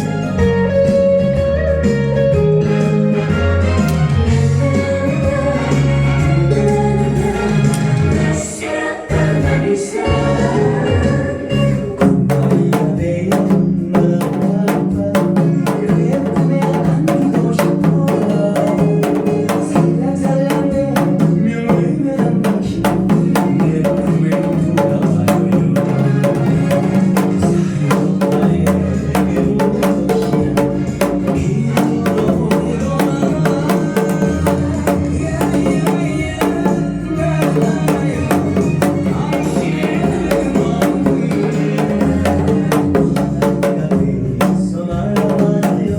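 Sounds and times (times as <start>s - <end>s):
pop backing track: 0.0s - 45.9s
hourglass drum quick drumbeat: 12.0s - 45.9s.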